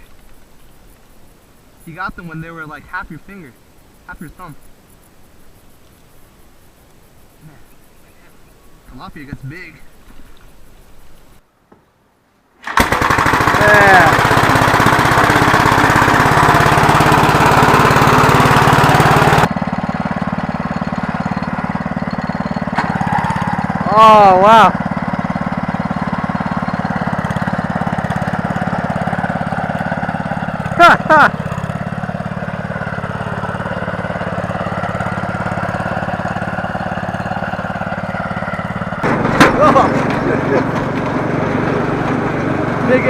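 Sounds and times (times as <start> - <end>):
small engine running: 12.6 - 43.0.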